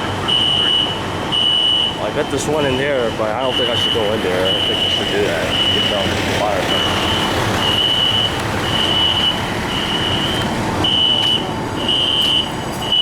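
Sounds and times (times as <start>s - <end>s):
fire alarm beeping: 0.0s - 2.1s, 3.4s - 13.0s
background rumble: 2.4s - 11.8s.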